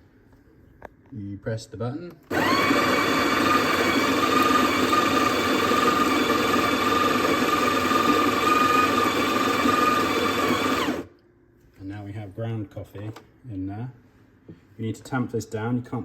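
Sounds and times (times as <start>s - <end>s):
coffee grinder running: 2.3s - 11.1s.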